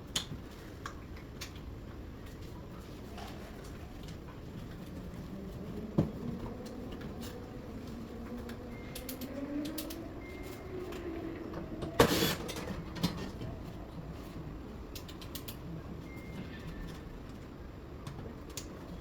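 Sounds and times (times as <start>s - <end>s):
faint rising hum: 3.5s - 14.9s.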